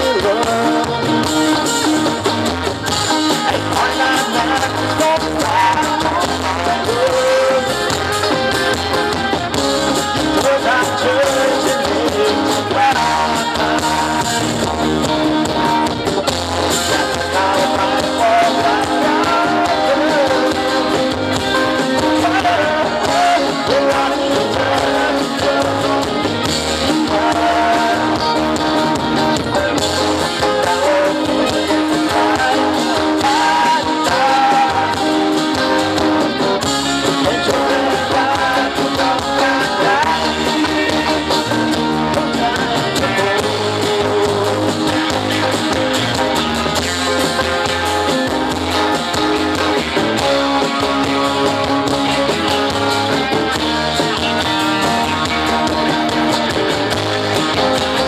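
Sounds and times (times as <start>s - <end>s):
live band with guitar: 0.0s - 58.0s.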